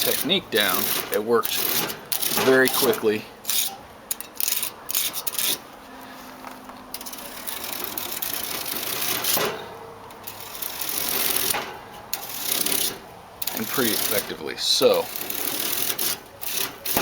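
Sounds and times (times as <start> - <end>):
tool scraping metal fins: 0.0 - 5.7, 7.0 - 17.0.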